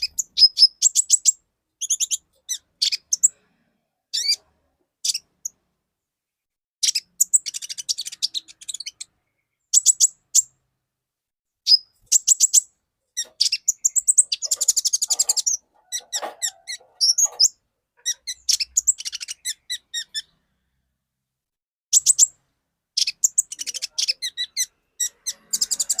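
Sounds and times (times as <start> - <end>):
bird singing high twittering phrases: 0.0 - 3.4, 6.8 - 10.6, 11.6 - 20.4, 21.9 - 22.4, 23.0 - 26.0.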